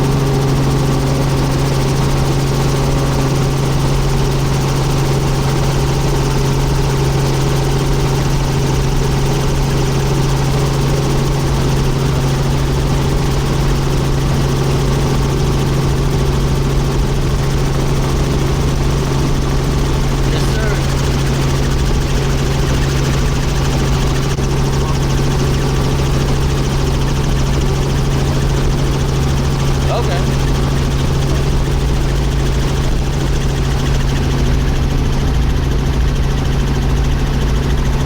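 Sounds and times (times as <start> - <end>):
helicopter engine and rotor drone: 0.0 - 38.0.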